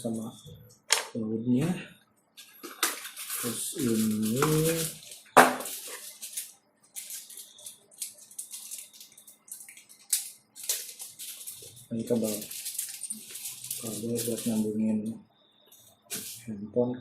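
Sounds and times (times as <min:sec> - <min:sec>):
plastic packaging crinkling: 0:02.4 - 0:14.9.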